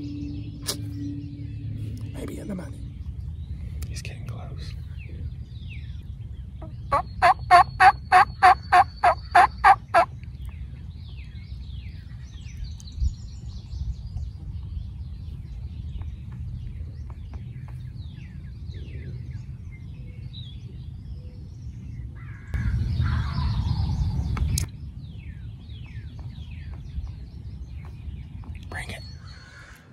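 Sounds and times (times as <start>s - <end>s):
small birds chirping: 0.0s - 29.9s
wild turkey calling: 6.6s - 10.1s.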